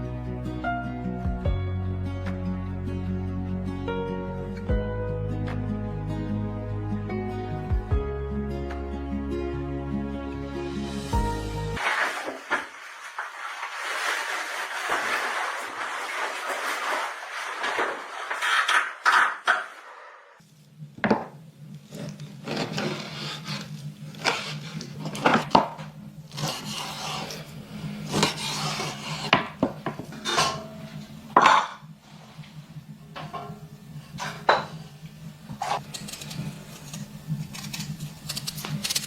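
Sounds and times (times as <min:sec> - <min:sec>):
cookware and utensils clinking: 0:29.3 - 0:31.9, 0:33.2 - 0:34.8.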